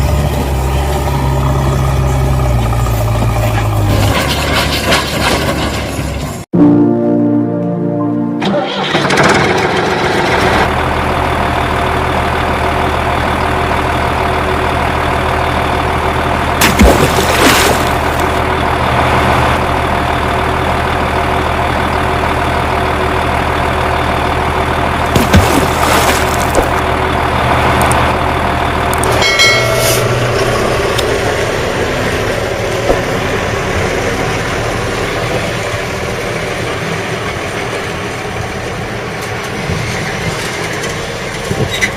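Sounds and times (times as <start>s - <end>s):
heavy vehicle engine idling: 8.6s - 17.2s, 17.8s - 41.9s.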